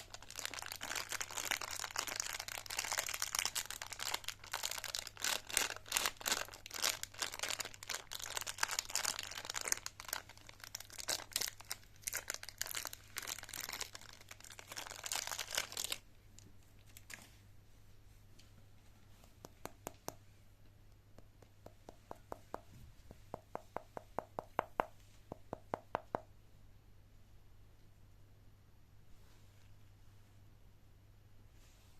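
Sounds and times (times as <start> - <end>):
candy wrappers crinkling and tearing: 0.0 - 17.3.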